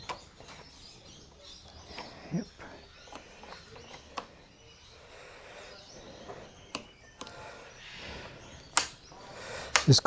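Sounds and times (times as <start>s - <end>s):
faint clicks and knocks of hands: 0.0s - 10.0s.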